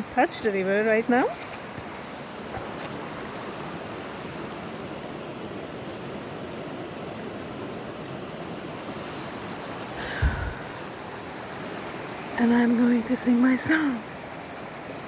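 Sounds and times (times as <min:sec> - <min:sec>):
river rushing: 0:00.0 - 0:15.0.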